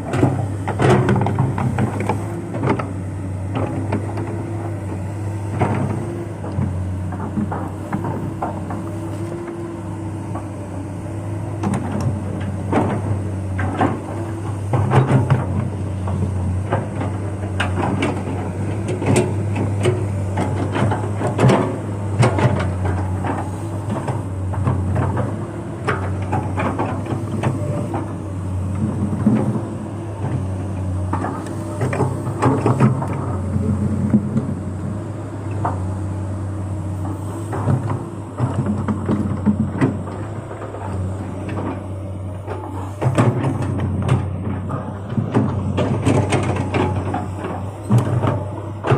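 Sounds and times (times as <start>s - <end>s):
excavator diesel engine running: 0.0s - 48.9s
excavator knocks and clanks: 0.0s - 48.9s.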